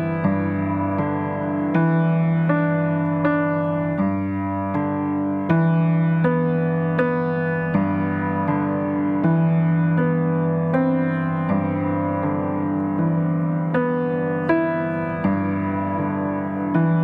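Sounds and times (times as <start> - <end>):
slow piano tune: 0.0 - 17.0.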